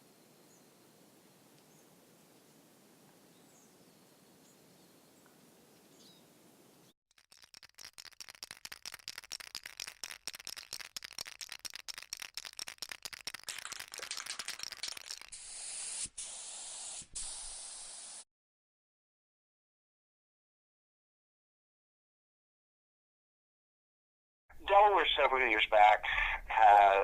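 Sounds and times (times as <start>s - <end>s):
spray can mixing ball rattling: 7.1s - 18.2s
spray can hissing: 7.2s - 18.2s.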